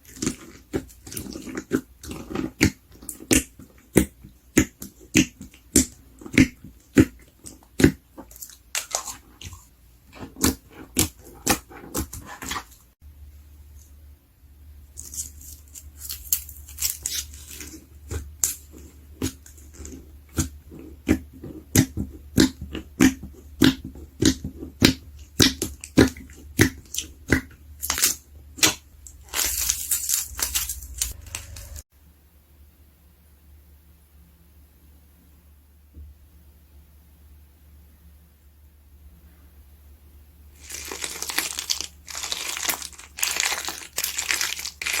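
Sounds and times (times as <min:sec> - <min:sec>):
slime popping and squelching: 0:40.6 - 0:45.0.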